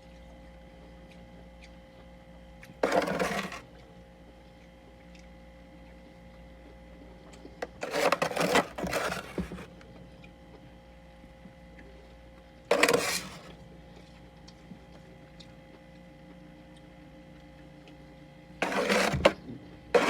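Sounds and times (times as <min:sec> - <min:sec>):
freezer frost crunching and scraping: 0:02.8 - 0:03.7, 0:07.6 - 0:09.7, 0:12.7 - 0:13.6, 0:18.6 - 0:20.0.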